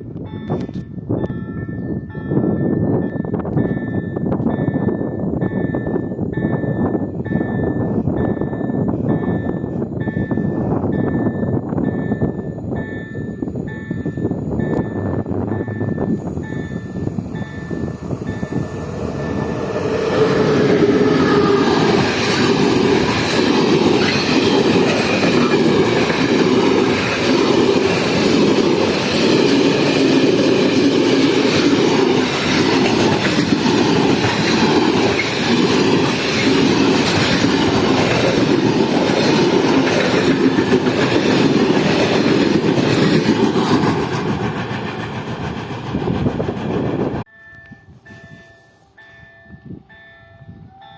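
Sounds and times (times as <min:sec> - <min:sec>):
wheels clickety-clack over rail joints: 0:00.0 - 0:47.8
freight train passing: 0:00.0 - 0:50.9.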